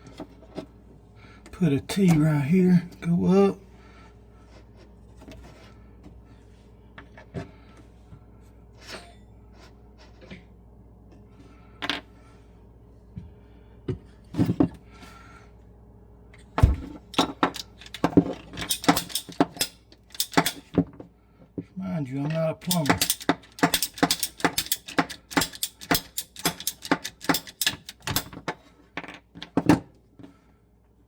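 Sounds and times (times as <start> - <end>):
hand tools and pipe fittings clattering: 16.6 - 20.9, 22.2 - 29.8.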